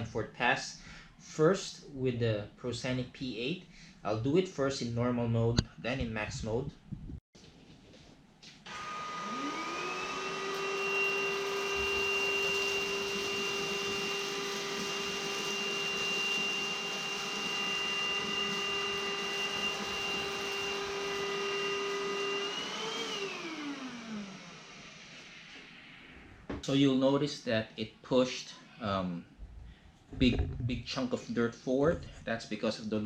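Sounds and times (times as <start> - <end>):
stick vacuum motor whine: 8.7 - 25.4.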